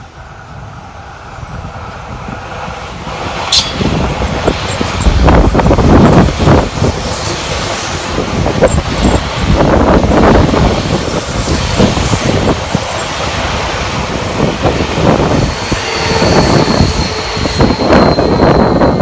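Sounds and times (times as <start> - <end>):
electric train passing: 0.0 - 19.0
high steady wheel squeal: 3.5 - 13.2, 14.6 - 19.0.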